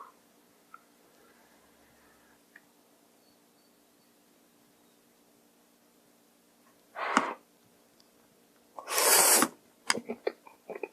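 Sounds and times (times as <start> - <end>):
faint steady hum: 0.0 - 10.9.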